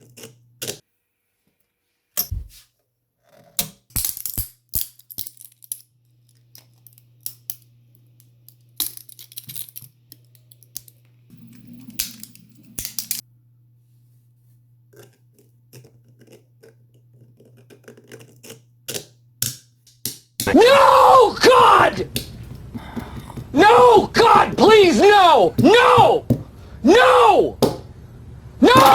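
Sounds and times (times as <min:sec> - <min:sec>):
plastic parts clicking and scraping: 0:00.0 - 0:00.8, 0:14.9 - 0:20.2
low hum: 0:11.2 - 0:13.6, 0:20.5 - 0:28.9.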